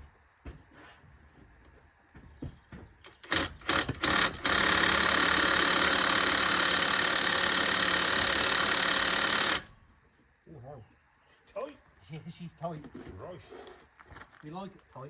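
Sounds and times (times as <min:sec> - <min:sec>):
impact wrench hammering: 0:03.1 - 0:09.7.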